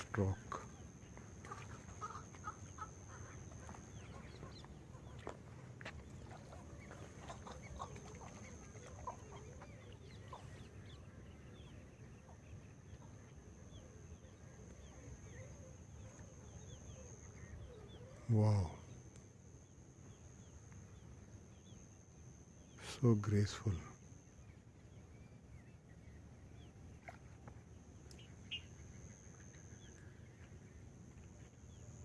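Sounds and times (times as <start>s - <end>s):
birds chirping and clucking: 0.0s - 18.5s.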